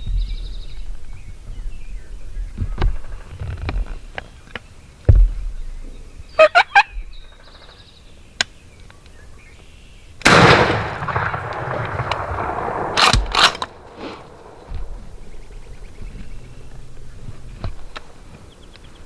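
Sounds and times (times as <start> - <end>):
wild turkey gobbling: 6.4 - 7.0.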